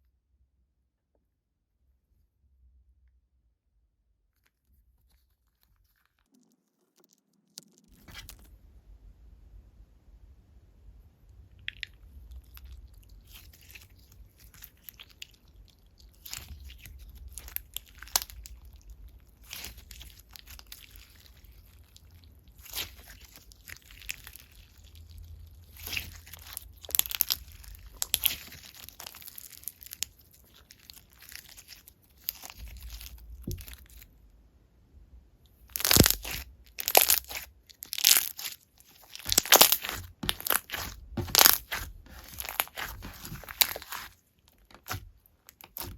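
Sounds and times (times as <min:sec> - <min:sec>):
slime squished by hand: 0:11.6 - 0:34.1, 0:35.6 - 0:45.9.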